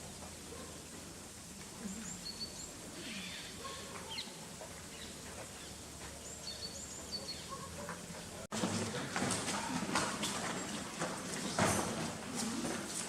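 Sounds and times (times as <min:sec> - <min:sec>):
small birds chirping: 0:01.8 - 0:08.4.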